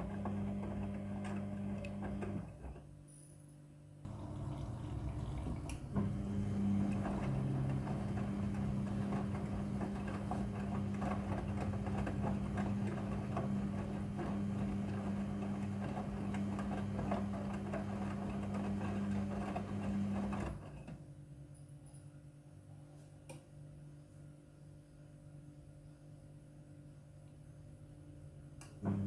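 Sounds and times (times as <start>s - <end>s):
washing machine motor hum: 0.0s - 2.9s, 4.0s - 20.9s, 28.8s - 29.0s
washing machine clatter: 4.1s - 20.8s.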